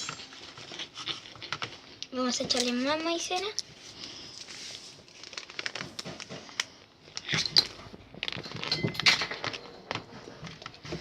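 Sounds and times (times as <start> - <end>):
slime rustling: 0.0 - 8.7.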